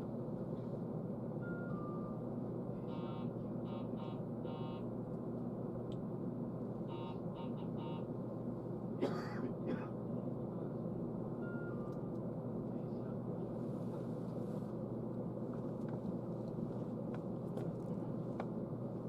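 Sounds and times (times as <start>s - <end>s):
steady train hum: 0.0s - 19.0s
electronic buzzer bursts: 2.9s - 4.8s, 6.9s - 8.1s.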